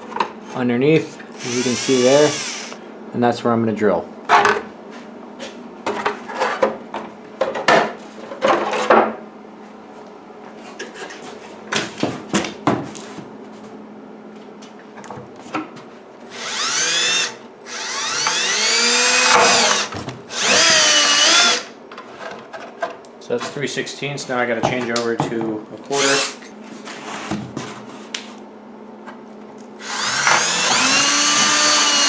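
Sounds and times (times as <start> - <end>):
power drill boring through fiberglass: 1.4 - 2.8, 16.3 - 21.7, 26.0 - 26.3, 29.8 - 32.0.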